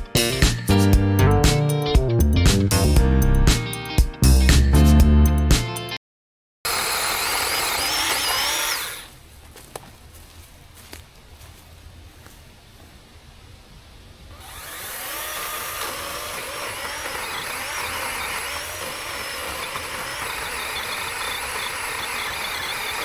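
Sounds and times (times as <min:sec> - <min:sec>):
chainsaw cutting tree trunk: 0:06.7 - 0:09.1, 0:14.3 - 0:23.0.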